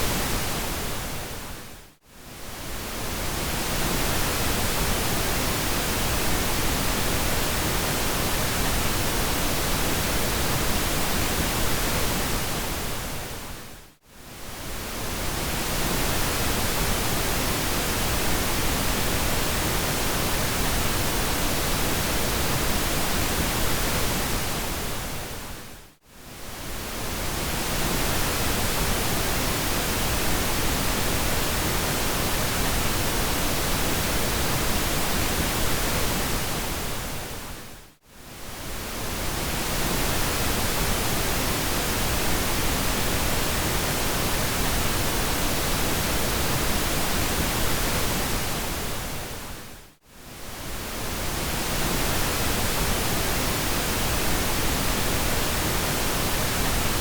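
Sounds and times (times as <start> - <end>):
pink noise hiss: 38.2 - 57.0.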